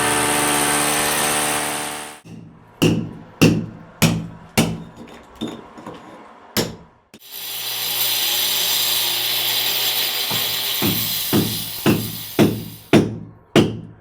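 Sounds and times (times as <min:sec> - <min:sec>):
steady hiss: 0:07.2 - 0:12.9.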